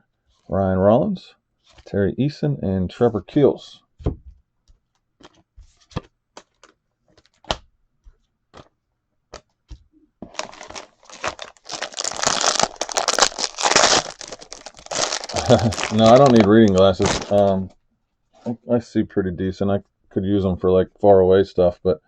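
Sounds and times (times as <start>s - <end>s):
foil wrapper crinkling and tearing: 10.2s - 17.7s.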